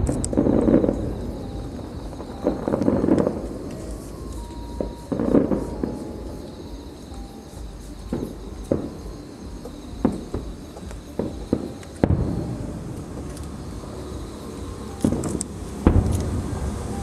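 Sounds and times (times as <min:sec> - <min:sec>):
fireworks bursting: 0:00.0 - 0:17.0
rumbling echo: 0:07.6 - 0:17.0.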